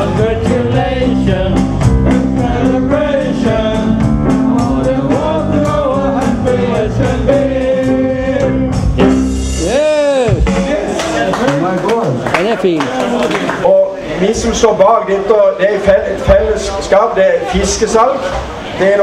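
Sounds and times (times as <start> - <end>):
steady drum beat: 0.0 - 12.8, 15.8 - 16.9
live band playing: 0.0 - 18.8
person singing: 9.6 - 10.6.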